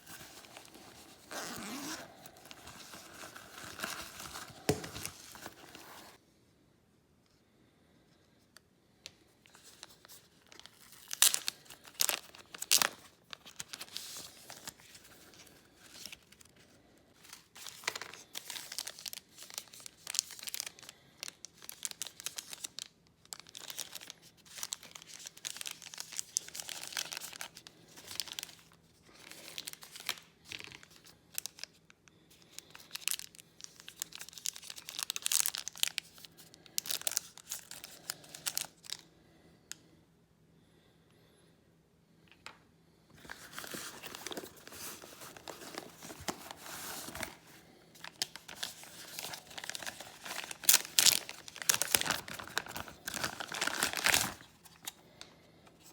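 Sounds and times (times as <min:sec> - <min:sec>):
crinkling and tearing: 0:09.6 - 0:16.5, 0:43.2 - 0:55.9.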